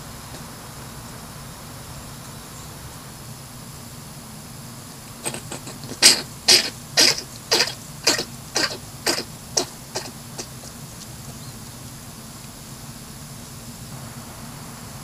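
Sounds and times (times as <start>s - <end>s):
hedgehog coughing: 5.2s - 10.8s.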